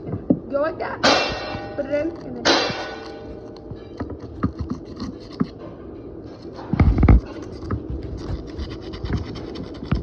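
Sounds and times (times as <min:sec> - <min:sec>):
sandpaper rubbing on metal: 0:07.3 - 0:10.0.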